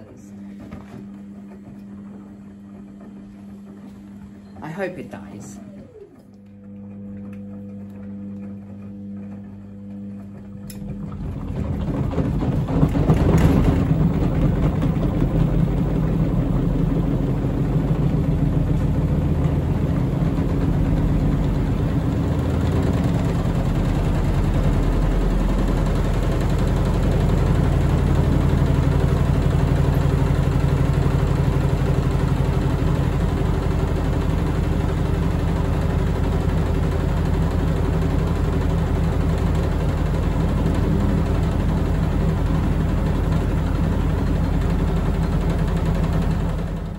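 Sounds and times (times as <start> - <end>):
washing machine spinning: 0.0 - 46.9
washing machine knock: 10.3 - 46.9.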